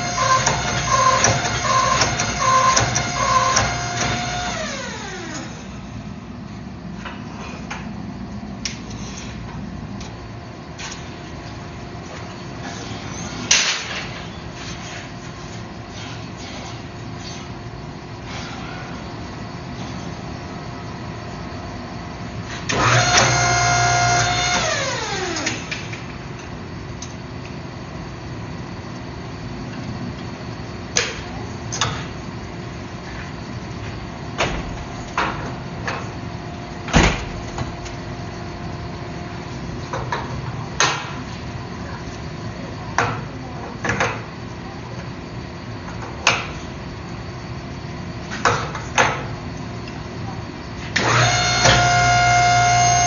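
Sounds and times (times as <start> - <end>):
motor winding down: 0.0 - 5.8, 22.7 - 25.7, 51.0 - 53.0
steady hum: 0.0 - 53.0
sharp knocks and clanks: 0.3 - 4.3.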